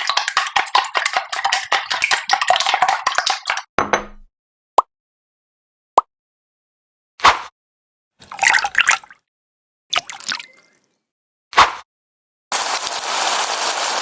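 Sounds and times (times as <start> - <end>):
whisk clinking against bowl: 0.0 - 3.5.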